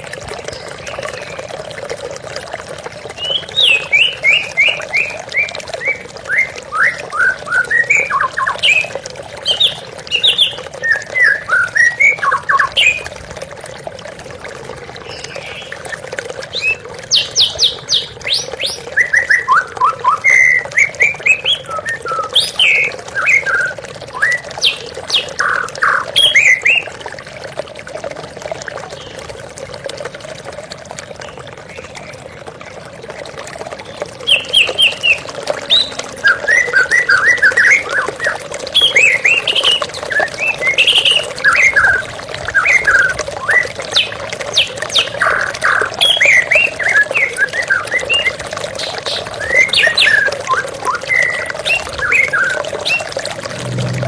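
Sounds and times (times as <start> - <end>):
flowing water rushing: 0.0 - 54.0
bird singing whistles and chirps: 3.2 - 8.9, 9.5 - 13.0, 16.6 - 26.9, 34.3 - 44.1, 49.1 - 53.1.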